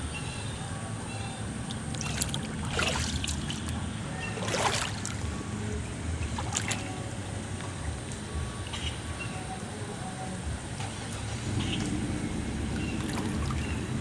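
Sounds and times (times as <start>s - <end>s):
steady low rumble: 0.0s - 14.0s
floodwater splashing: 1.7s - 5.3s, 6.2s - 7.1s, 12.8s - 14.0s.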